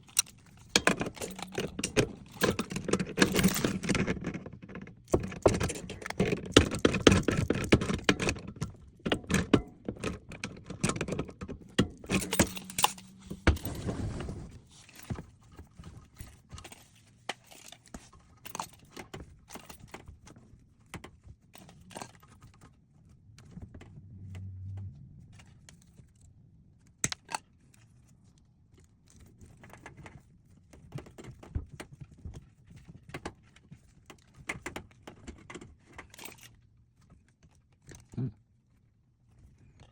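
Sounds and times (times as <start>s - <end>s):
knocking and clattering: 0.7s - 13.8s.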